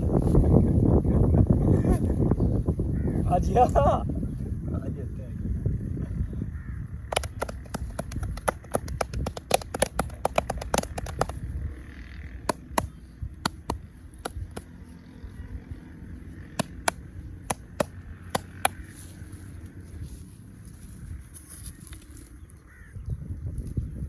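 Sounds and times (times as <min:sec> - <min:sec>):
hands slapping and clicking: 0:07.1 - 0:11.5, 0:12.4 - 0:14.7, 0:16.5 - 0:18.9.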